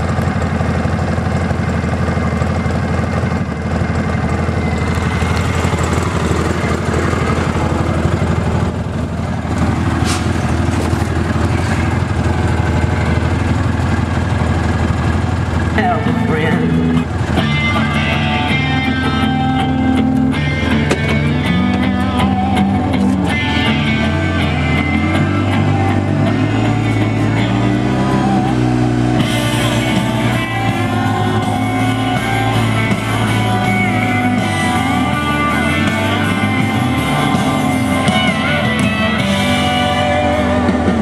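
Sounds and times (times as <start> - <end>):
rock music with electric guitar: 0.0 - 41.0
person singing: 15.8 - 41.0.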